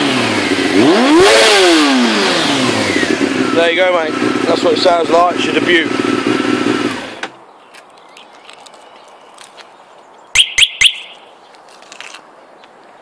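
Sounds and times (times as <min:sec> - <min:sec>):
motorcycle engine running: 0:00.0 - 0:07.3
bird chirping: 0:07.5 - 0:11.7.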